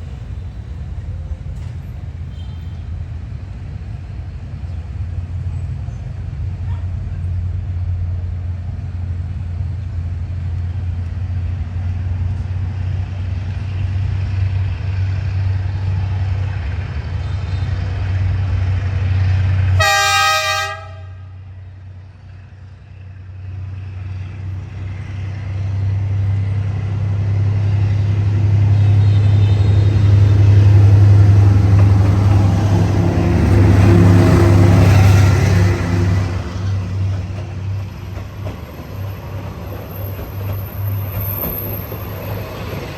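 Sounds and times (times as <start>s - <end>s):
diesel locomotive rumbling: 0.0s - 42.9s
train horn blast: 19.7s - 21.5s, 28.6s - 31.2s.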